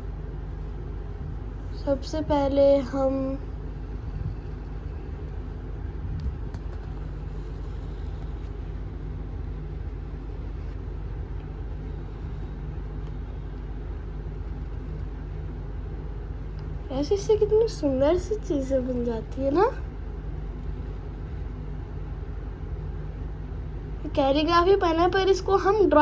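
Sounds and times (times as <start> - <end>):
low background rumble: 0.0 - 26.0.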